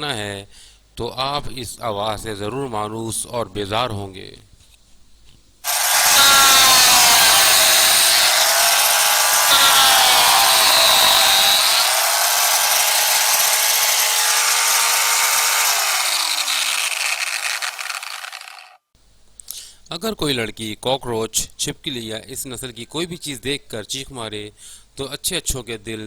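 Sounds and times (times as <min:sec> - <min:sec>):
angle grinder grinding: 0:05.7 - 0:18.8.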